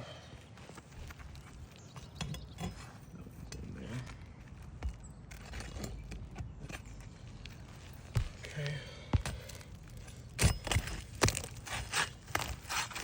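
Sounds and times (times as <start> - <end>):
tool scraping on roof shingles: 9.2 - 13.0.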